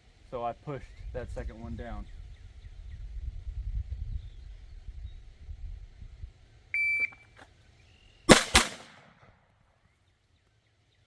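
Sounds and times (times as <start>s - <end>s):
shot timer beep: 6.8s - 7.2s
pistol shots: 8.3s - 9.2s.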